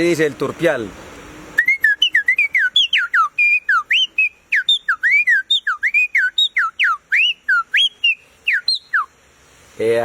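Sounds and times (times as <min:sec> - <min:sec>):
man whistling birdsong: 0:01.6 - 0:09.2.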